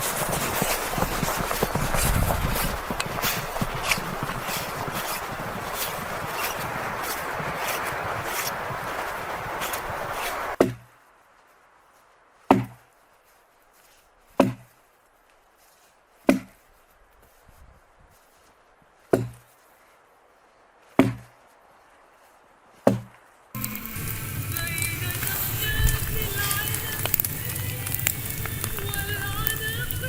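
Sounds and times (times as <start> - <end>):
loud steady rushing noise: 0.0 - 10.6, 23.6 - 30.0
axe chopping wood: 10.6 - 10.9, 12.5 - 12.8, 14.4 - 14.7, 16.3 - 16.6, 19.1 - 19.4, 21.0 - 21.3, 22.8 - 23.1.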